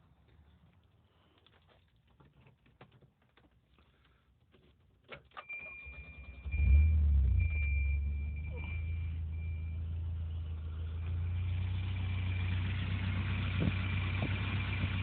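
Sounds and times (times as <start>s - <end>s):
car engine cranking and running: 5.2s - 15.0s.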